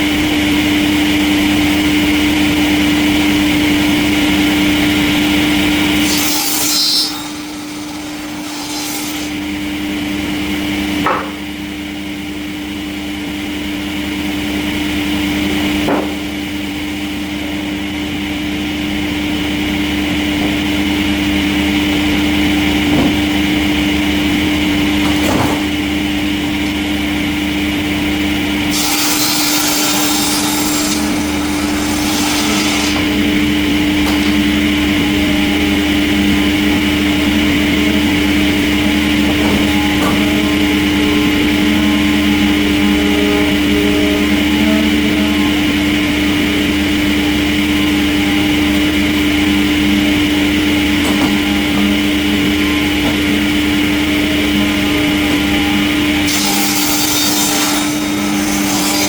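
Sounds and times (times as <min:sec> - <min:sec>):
machine hum: 0:00.0 - 0:59.0
saw cutting through log: 0:04.0 - 0:11.5, 0:28.4 - 0:59.0.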